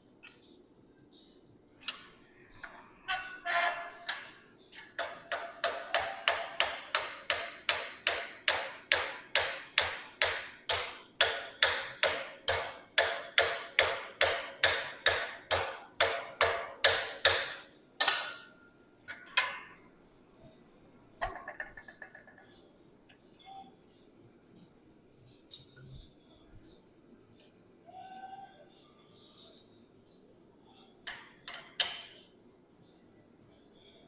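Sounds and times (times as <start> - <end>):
hammer striking metal bar: 4.0 - 18.5, 31.1 - 32.2.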